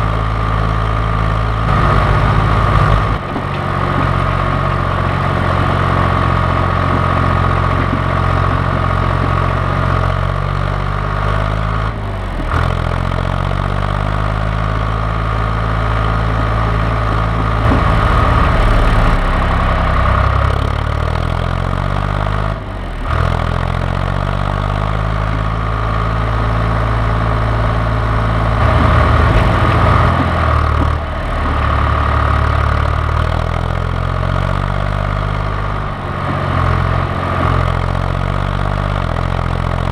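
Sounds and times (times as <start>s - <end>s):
tractor diesel engine running: 0.0s - 39.9s
steady high whine: 17.4s - 20.9s.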